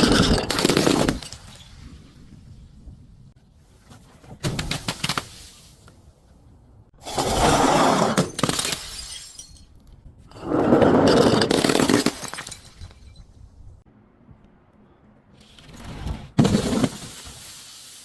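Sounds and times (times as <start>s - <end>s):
glass bottles shattering: 8.1s - 9.8s, 11.0s - 13.3s.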